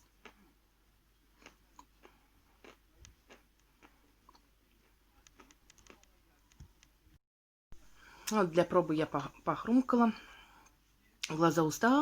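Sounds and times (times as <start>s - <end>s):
person chewing chalk: 1.4s - 6.1s.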